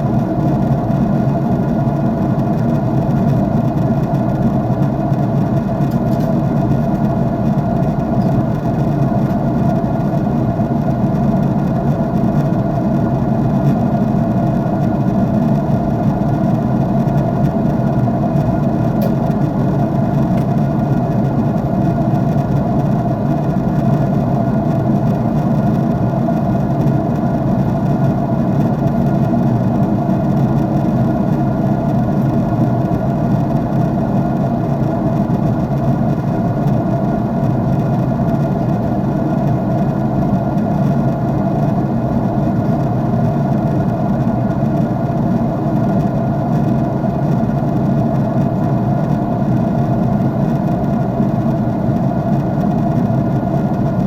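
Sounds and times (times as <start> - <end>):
jet engine drone in cabin: 0.0 - 54.0.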